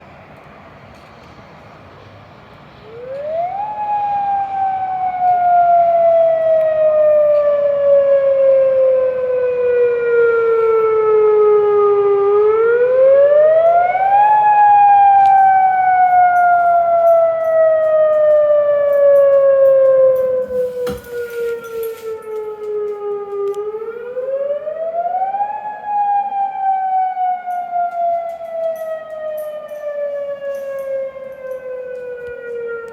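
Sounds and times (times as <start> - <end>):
warning siren rising and falling: 1.8 - 32.9.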